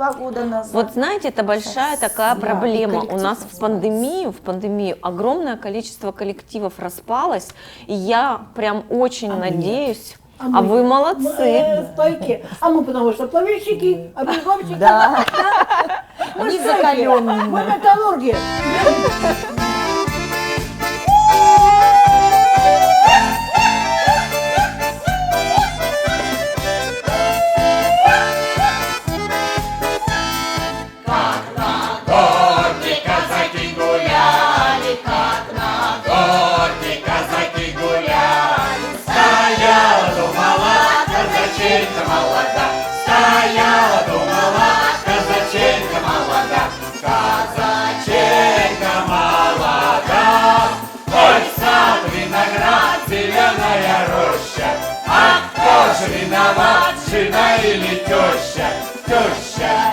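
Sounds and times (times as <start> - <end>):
accordion playing: 18.3 - 59.9
choir singing folk song: 18.4 - 59.9
steady bass beat: 18.4 - 59.9.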